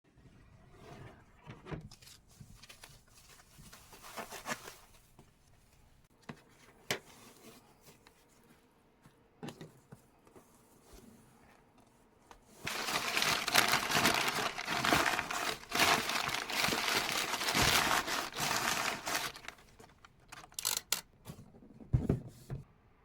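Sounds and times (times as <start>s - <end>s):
packing rustling and rubbing: 12.6s - 20.8s.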